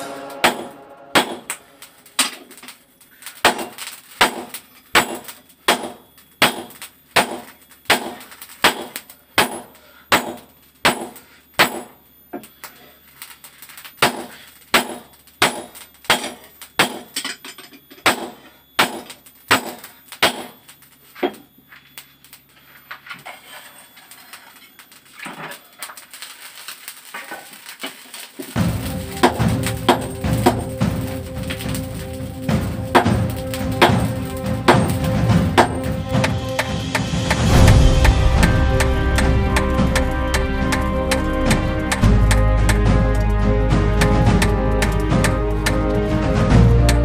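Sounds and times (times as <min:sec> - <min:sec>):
hammer striking steel on anvil: 0:00.0 - 0:02.7, 0:03.4 - 0:12.0, 0:14.0 - 0:20.6, 0:28.6 - 0:43.4.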